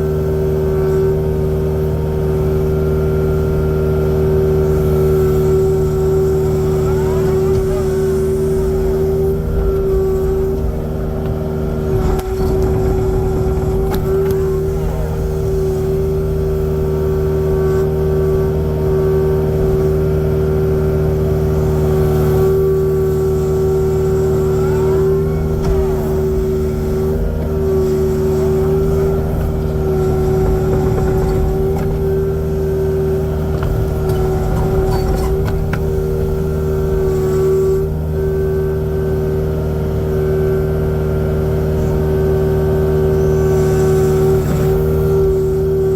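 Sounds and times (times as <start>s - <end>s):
diesel engine humming: 0.0s - 45.9s.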